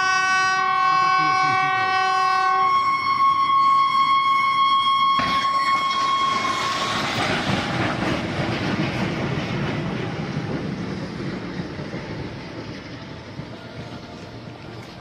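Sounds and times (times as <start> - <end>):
train horn: 0.0 - 7.0
train wheels on rails: 0.0 - 15.0.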